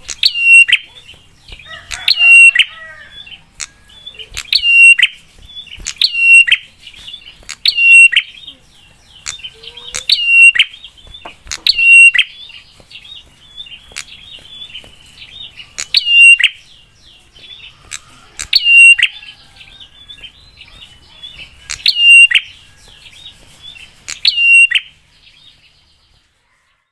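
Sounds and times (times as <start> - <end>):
bird fast chattering: 0.0 - 22.6.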